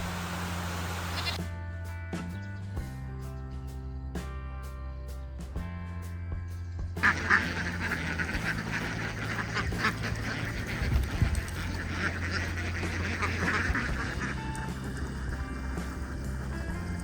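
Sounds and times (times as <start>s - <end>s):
flock of ducks quacking: 0.0s - 1.4s, 7.0s - 17.0s.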